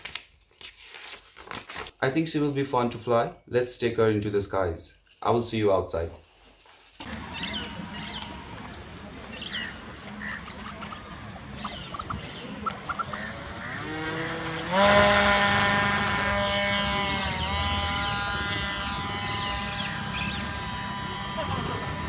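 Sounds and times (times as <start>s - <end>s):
birds chirping: 7.0s - 15.0s, 16.7s - 22.0s
electric motor and propeller whine: 7.1s - 22.0s.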